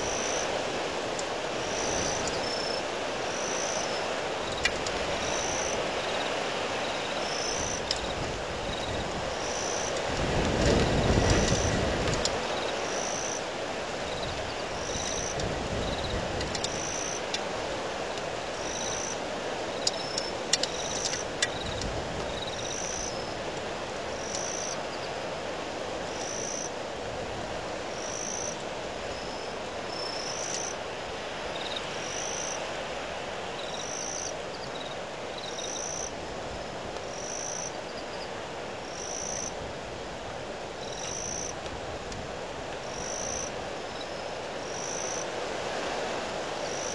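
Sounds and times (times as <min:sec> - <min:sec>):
wind blowing: 0:00.0 - 0:26.1.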